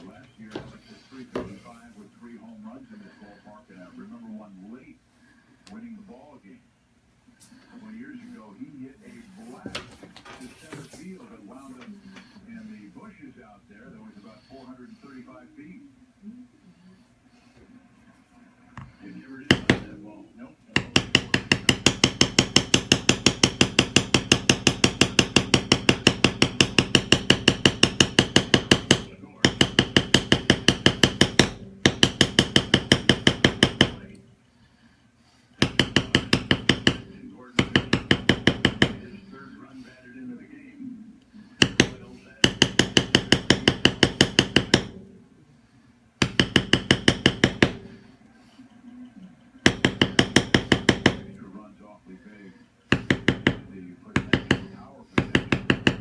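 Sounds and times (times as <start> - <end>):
mallet tapping metal stamping tool: 20.8 - 34.2, 35.6 - 39.1, 41.6 - 45.0, 46.2 - 47.9, 49.6 - 51.4, 52.9 - 56.0.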